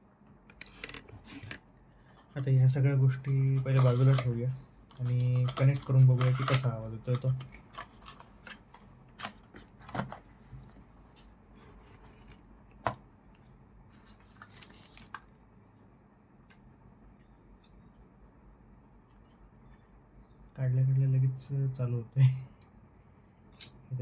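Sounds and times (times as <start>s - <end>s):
plastic items clicking and knocking: 4.9s - 10.2s.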